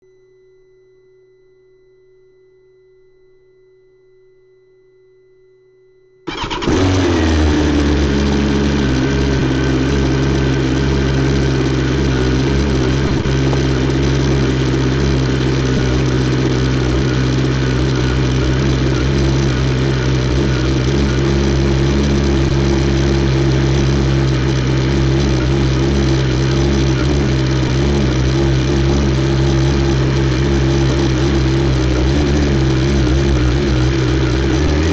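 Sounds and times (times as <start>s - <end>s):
faint steady hum: 0.0s - 6.2s
motorcycle engine starting and idling: 6.3s - 34.9s.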